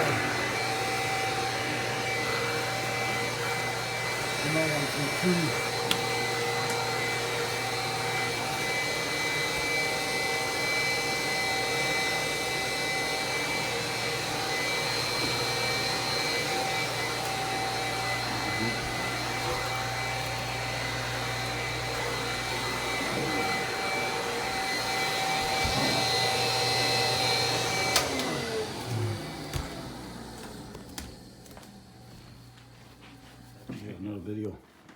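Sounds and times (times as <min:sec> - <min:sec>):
vacuum cleaner motor whining: 0:00.0 - 0:34.9.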